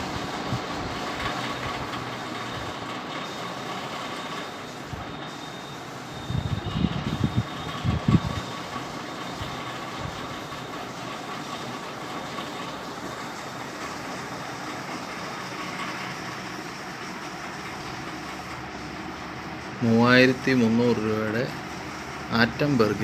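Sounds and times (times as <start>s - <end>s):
fan whirring: 0.0s - 23.0s
faint thin whine: 3.3s - 17.1s.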